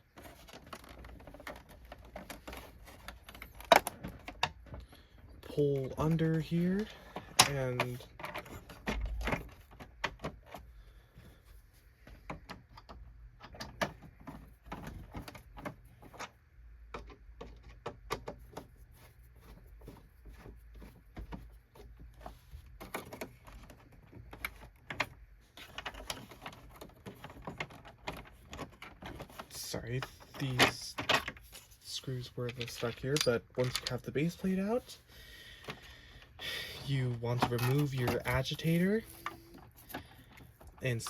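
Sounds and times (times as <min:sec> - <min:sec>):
plastic clicks and rattles: 0:19.5 - 0:29.6, 0:32.4 - 0:34.8.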